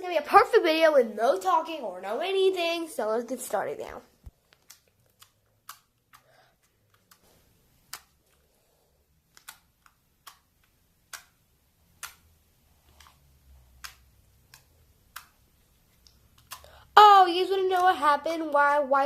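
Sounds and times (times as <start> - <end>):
slime clicking and popping: 4.5 - 7.2, 9.2 - 16.8.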